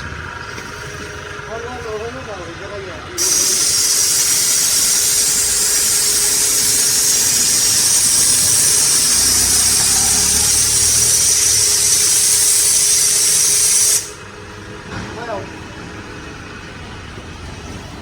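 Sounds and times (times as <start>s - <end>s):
motor hum: 0.0s - 13.4s
pressure washer water jet hissing: 3.2s - 14.3s.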